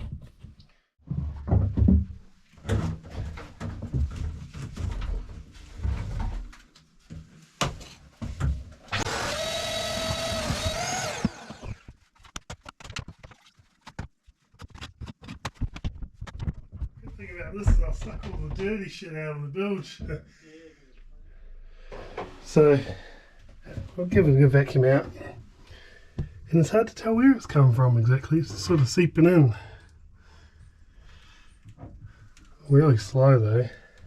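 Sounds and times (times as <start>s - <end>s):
vacuum motor whining: 8.9s - 11.8s.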